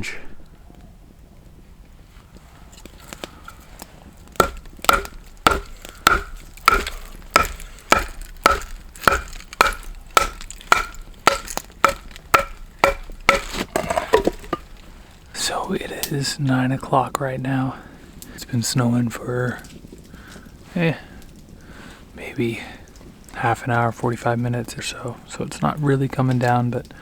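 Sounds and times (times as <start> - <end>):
machete chopping wood: 4.4 - 14.7.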